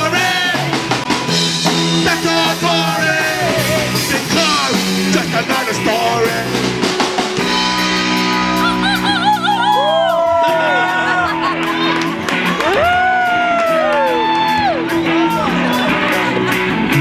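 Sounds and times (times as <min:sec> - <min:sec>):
punk rock band playing: 0:00.0 - 0:17.0
person singing: 0:02.0 - 0:06.6.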